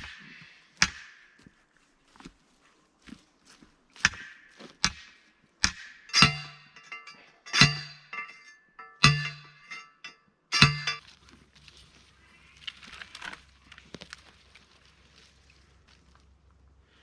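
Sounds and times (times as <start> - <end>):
hammer clanging on metal post: 4.0 - 11.0.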